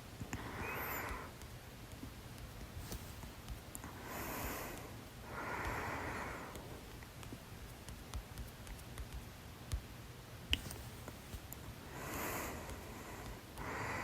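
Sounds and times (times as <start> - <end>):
person breathing heavily: 0.3 - 1.4, 3.8 - 6.9, 11.8 - 14.0
faint sharp clicks: 10.5 - 11.7.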